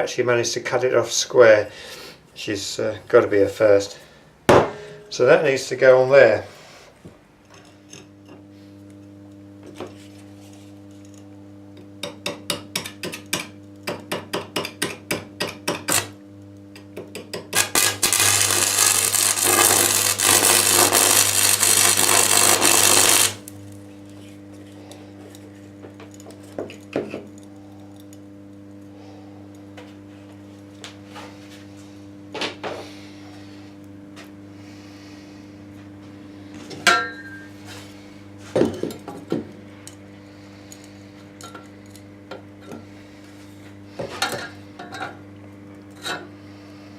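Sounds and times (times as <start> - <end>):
steady electrical hum: 0.0 - 46.9
harsh metal grinding: 17.6 - 23.4.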